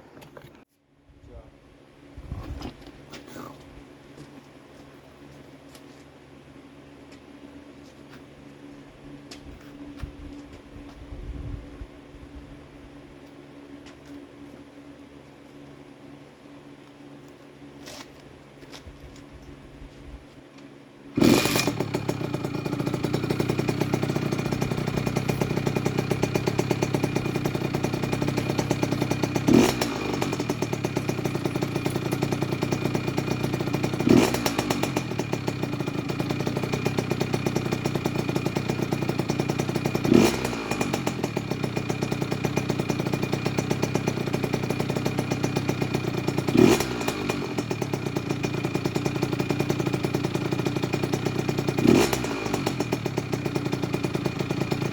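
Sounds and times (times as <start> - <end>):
engine throttle blips: 21.2 - 54.9
two-stroke engine idling: 21.2 - 54.9.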